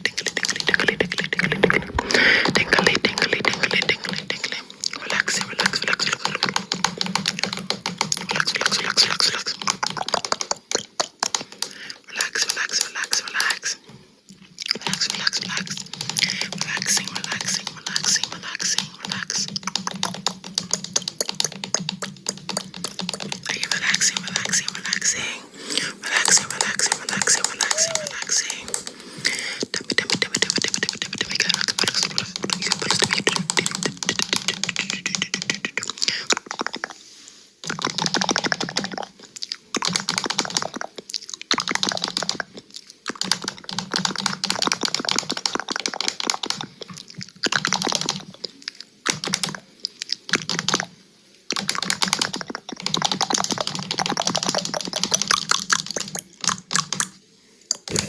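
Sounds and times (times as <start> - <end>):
rapid crisp tapping and clicking: 0.0 - 36.9, 49.1 - 57.2.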